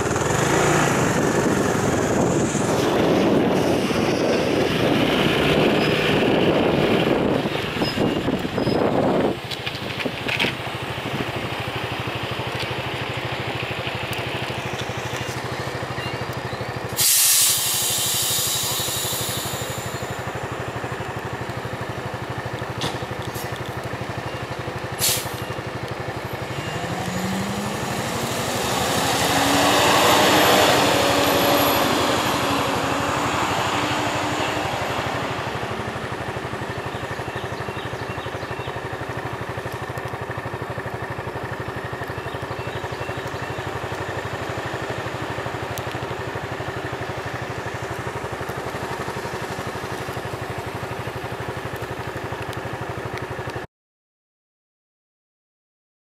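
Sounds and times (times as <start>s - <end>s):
vehicle engine rising in pitch: 0.0s - 9.4s, 10.8s - 51.9s
diesel engine idling: 0.0s - 53.6s
air brake hiss: 16.9s - 19.9s, 25.0s - 25.4s.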